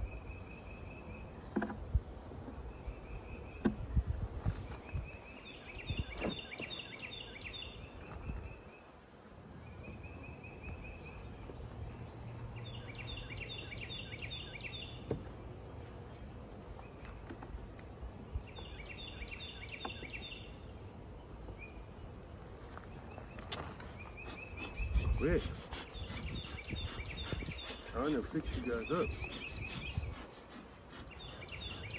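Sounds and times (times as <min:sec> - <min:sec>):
small bird chirping: 0:30.9 - 0:31.9.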